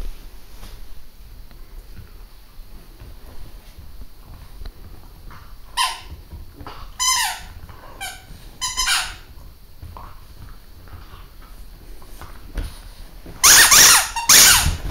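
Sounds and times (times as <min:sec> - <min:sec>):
squeaky pet toy squeaks: 0:13.4 - 0:14.8.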